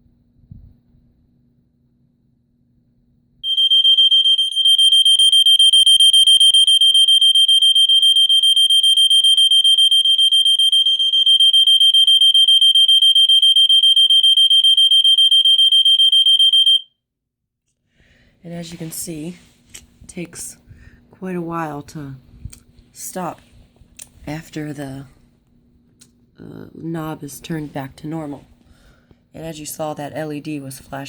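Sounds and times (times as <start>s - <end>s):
smoke detector alarm tone: 3.4s - 17.0s.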